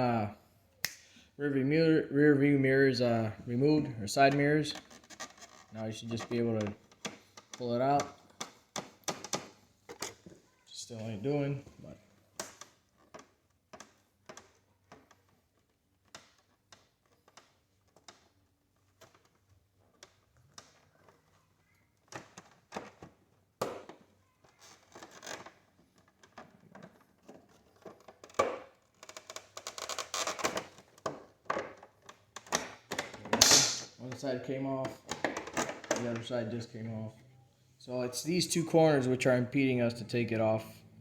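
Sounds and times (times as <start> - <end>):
plastic knocking rattling and scraping: 4.2 - 10.5, 11.6 - 36.6.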